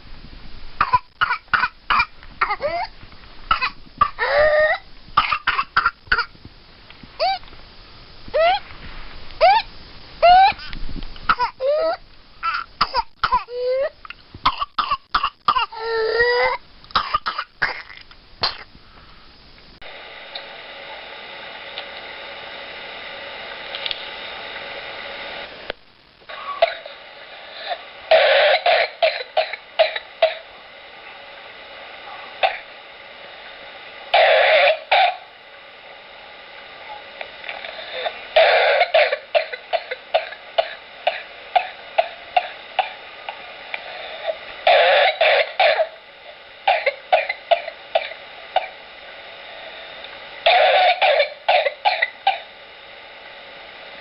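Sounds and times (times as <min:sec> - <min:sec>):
steady hum: 0:00.0 - 0:54.0
rapid coughing fits: 0:26.3 - 0:30.5, 0:32.4 - 0:32.7, 0:34.2 - 0:35.3, 0:37.5 - 0:46.0, 0:46.7 - 0:48.8, 0:50.4 - 0:52.5.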